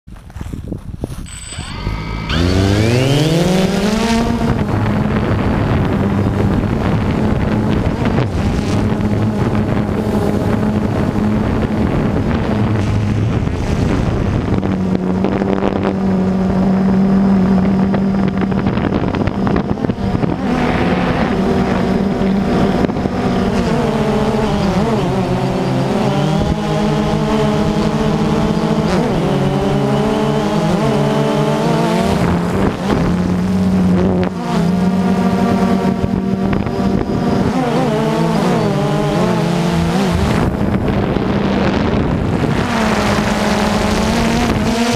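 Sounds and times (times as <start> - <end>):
farm machine engine running: 1.1 - 13.2.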